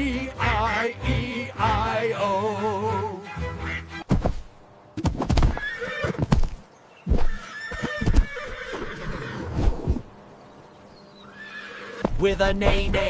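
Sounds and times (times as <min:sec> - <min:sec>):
horse whinnying: 0:05.5 - 0:06.3, 0:07.1 - 0:10.0, 0:11.2 - 0:12.0.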